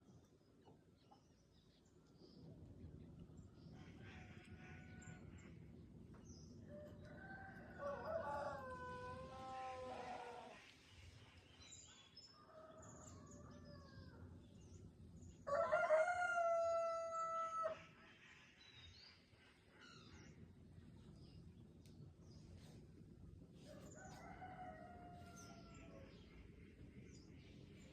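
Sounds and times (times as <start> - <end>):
rooster crowing: 6.8 - 10.6, 15.5 - 17.8, 23.7 - 26.1.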